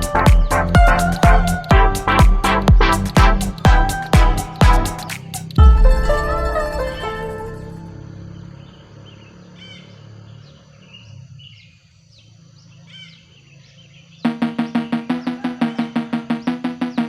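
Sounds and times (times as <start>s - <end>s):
rhythmic percussive music: 0.0s - 7.8s, 14.3s - 17.0s
plucked-string music: 5.6s - 8.2s
faint bird chirps: 6.9s - 17.0s.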